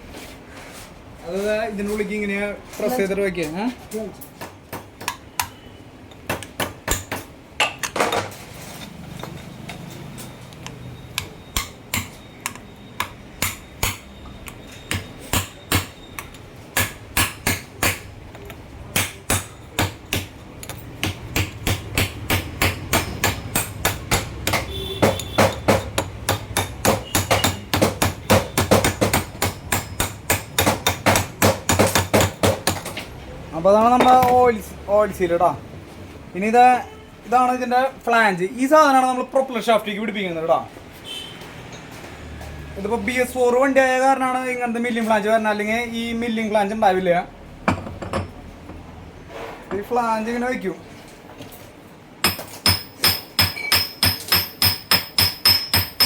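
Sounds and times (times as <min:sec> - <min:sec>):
hammer blows on metal: 0:21.0 - 0:32.5.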